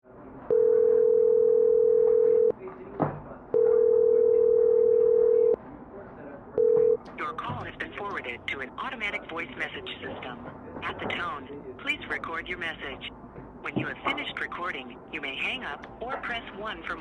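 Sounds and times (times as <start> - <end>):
telephone ringback tone: 0.5 - 2.5, 3.6 - 5.6.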